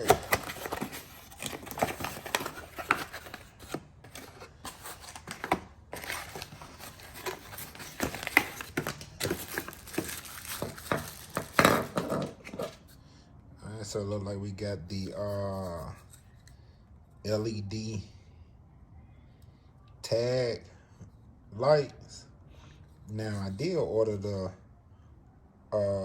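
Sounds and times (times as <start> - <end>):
packaging crinkling and tearing: 0.0 - 12.9.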